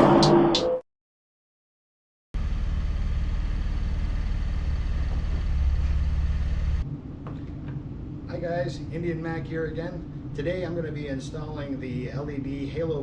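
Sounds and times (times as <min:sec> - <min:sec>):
car engine running: 0:02.4 - 0:06.8.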